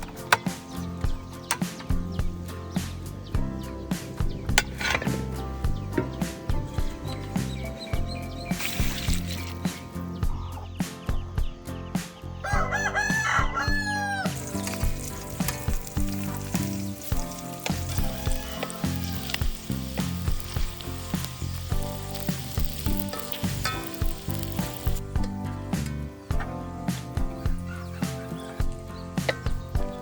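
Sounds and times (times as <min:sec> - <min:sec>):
oil sizzling: 0:00.0 - 0:10.4, 0:14.0 - 0:26.0, 0:27.0 - 0:30.0
background music: 0:00.0 - 0:30.0
rooster crowing: 0:12.4 - 0:15.1, 0:17.8 - 0:19.7.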